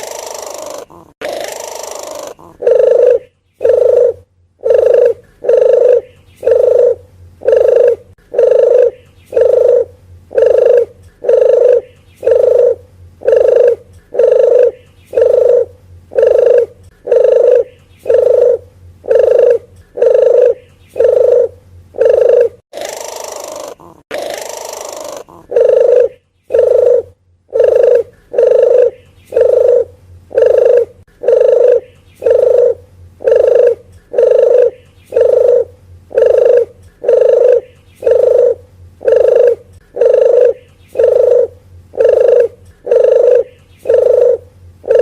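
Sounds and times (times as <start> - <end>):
dove cooing: 0.0 - 45.0.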